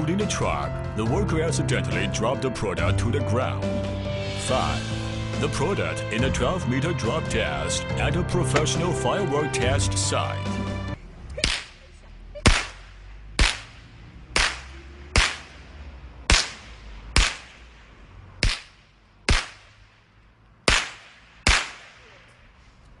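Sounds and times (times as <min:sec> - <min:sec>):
snap pops cracking: 0:12.4 - 0:15.6, 0:16.3 - 0:17.7.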